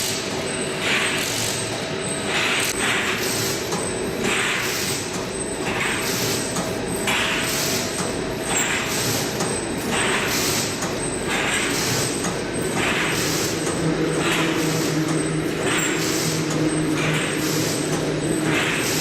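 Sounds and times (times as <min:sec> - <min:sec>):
wire netting machine running: 0:00.0 - 0:06.6, 0:07.2 - 0:19.0
rhythmic hissing swish: 0:11.6 - 0:19.0.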